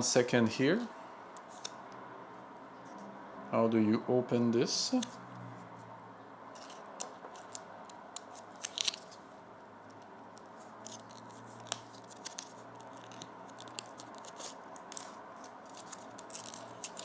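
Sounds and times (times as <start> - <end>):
wrapper clicking and crinkling: 6.6 - 9.2, 10.0 - 17.0.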